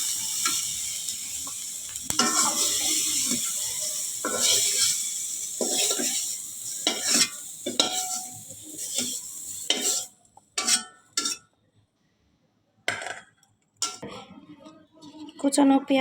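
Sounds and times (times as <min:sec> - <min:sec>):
vegetables sizzling in oil: 0:00.0 - 0:11.4, 0:13.8 - 0:14.1
spatula scraping a pan: 0:00.0 - 0:11.5, 0:13.8 - 0:15.4.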